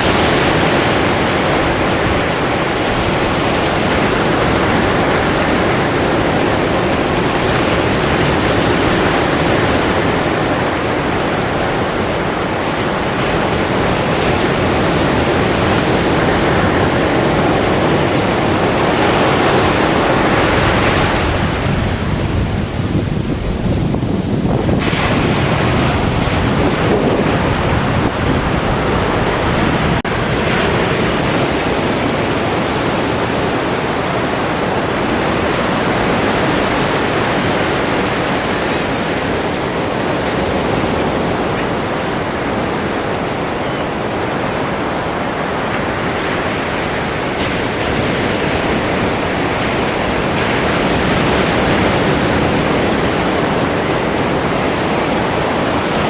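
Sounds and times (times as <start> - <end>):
waves breaking: 0.0 - 56.0.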